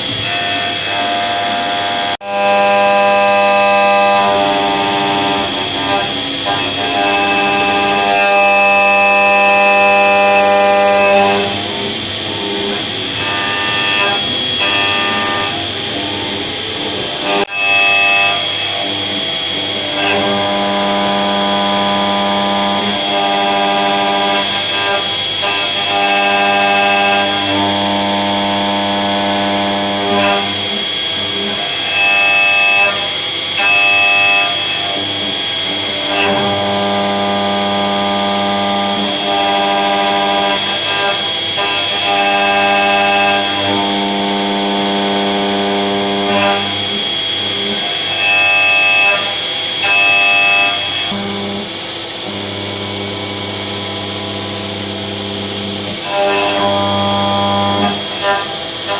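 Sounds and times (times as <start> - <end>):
steady high tone: 46.4 - 58.9.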